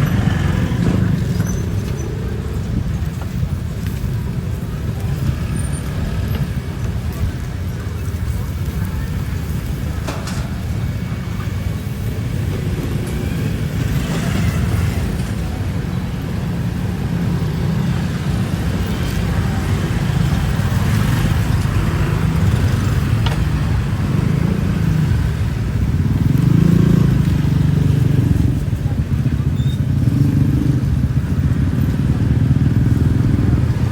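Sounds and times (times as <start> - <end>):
street traffic rumble: 0.0 - 33.9.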